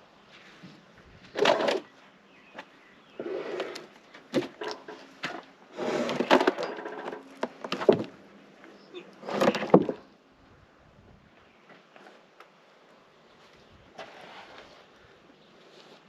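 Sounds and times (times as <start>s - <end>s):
wood knocking and clattering: 6.1s - 8.2s, 9.3s - 10.0s.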